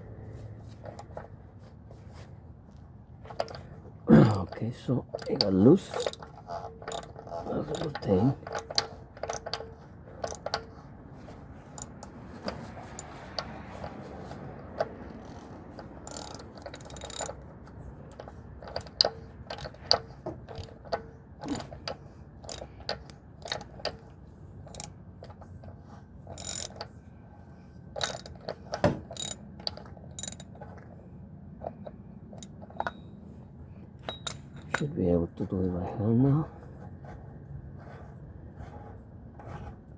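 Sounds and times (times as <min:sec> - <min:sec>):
ratchet wrench clicking: 0:05.2 - 0:10.7, 0:11.7 - 0:12.1, 0:16.0 - 0:17.4, 0:18.1 - 0:24.0, 0:24.7 - 0:25.0, 0:26.3 - 0:26.9, 0:28.0 - 0:30.5.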